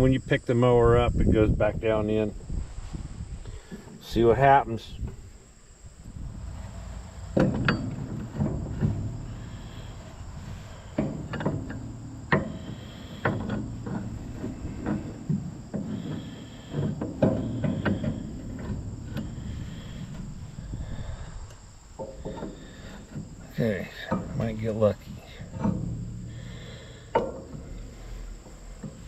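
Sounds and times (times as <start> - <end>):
steel parts knocking and clanking: 6.4 - 20.7, 21.4 - 29.0.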